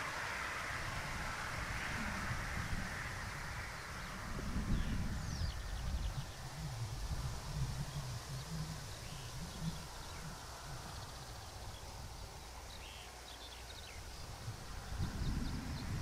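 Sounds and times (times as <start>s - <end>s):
low rumble and hiss: 0.0s - 16.0s
faint bird chirps: 7.5s - 14.4s.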